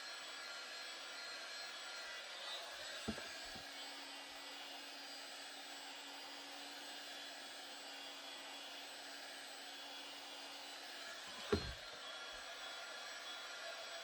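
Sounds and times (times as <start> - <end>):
dull thump: 3.1 - 3.6, 11.5 - 11.8.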